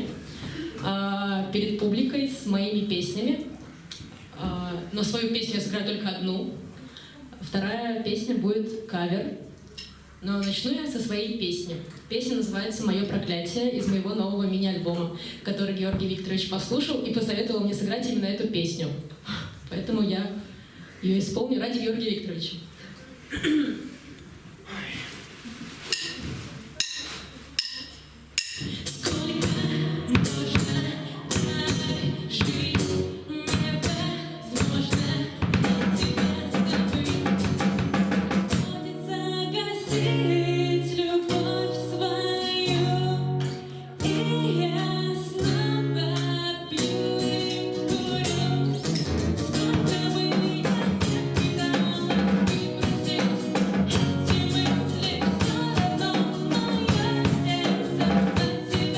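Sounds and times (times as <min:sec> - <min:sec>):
woman singing: 0:28.6 - 0:58.9
live band playing: 0:29.1 - 0:38.9, 0:47.6 - 0:58.9.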